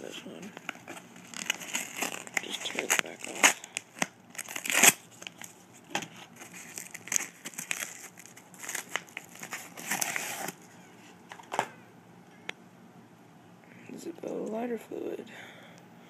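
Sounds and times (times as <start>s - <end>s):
packaging tearing and crinkling: 0.6s - 5.6s, 6.2s - 10.6s.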